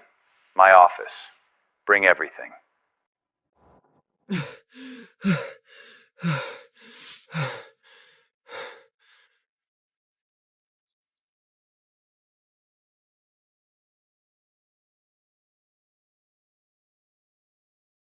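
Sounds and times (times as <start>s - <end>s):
person breathing hard: 4.3s - 9.4s.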